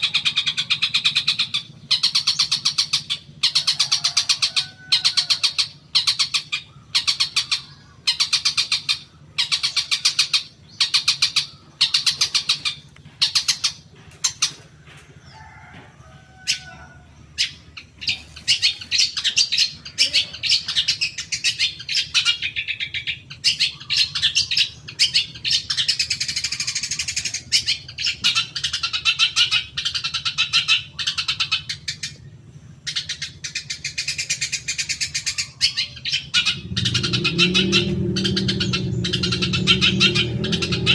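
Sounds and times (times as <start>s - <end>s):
shrike chattering song: 0.0s - 14.8s, 17.2s - 40.9s
low hum: 36.2s - 40.9s.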